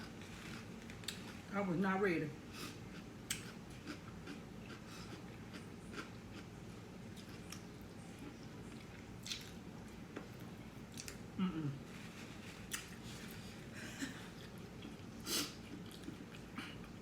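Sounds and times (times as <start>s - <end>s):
wet chewing and mouth smacks: 2.9s - 6.5s, 7.1s - 11.2s, 12.7s - 13.0s, 14.4s - 17.0s
low vocal murmur: 11.4s - 11.9s.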